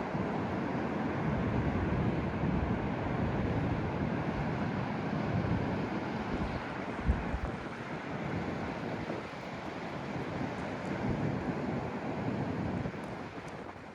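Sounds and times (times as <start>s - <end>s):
wind buffeting microphone: 1.2s - 13.9s.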